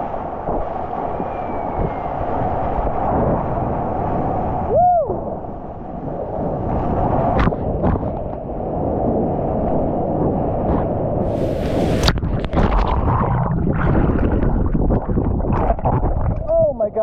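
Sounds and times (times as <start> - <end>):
ocean surf: 0.0 - 14.7
wind: 0.0 - 17.0
whistle-like tone: 1.2 - 2.1.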